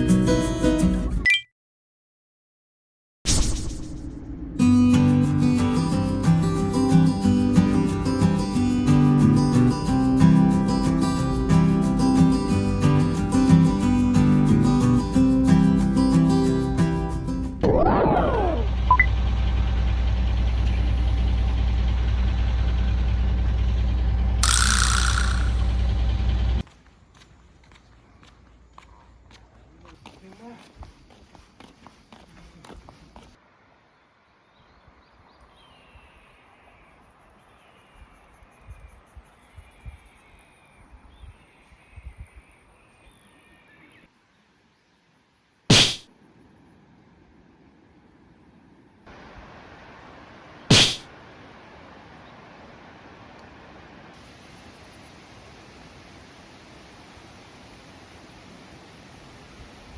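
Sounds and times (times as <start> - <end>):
vehicle engine droning: 17.2 - 26.6
high insect buzz: 24.4 - 25.7, 45.7 - 46.1
short hiss: 45.7 - 46.1, 50.7 - 51.1
short loud bang: 45.7 - 46.1, 50.7 - 51.1.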